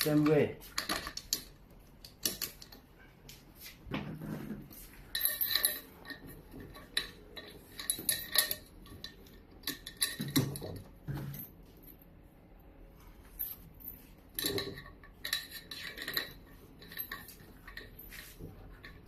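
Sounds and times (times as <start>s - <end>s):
metal frame bars clinking: 5.1s - 11.4s, 14.3s - 19.0s.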